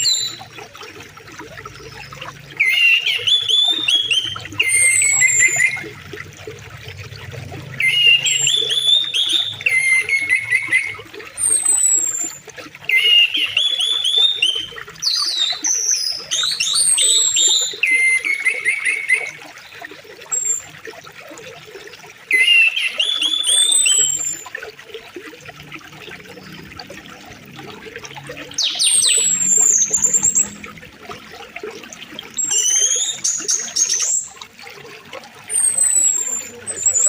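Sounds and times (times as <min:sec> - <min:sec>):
stream water running: 0:00.0 - 0:37.0
songbirds singing: 0:01.5 - 0:06.0, 0:28.0 - 0:34.4, 0:35.4 - 0:37.0.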